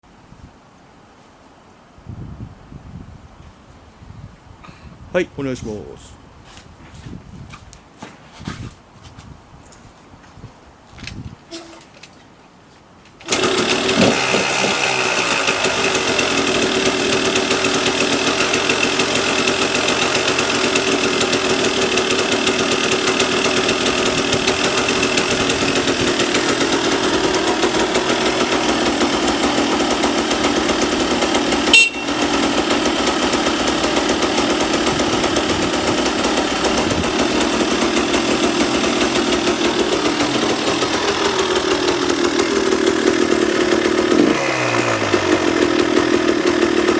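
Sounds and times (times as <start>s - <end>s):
engine kick-start: 13.2s - 46.9s
two-stroke engine running: 13.2s - 46.9s.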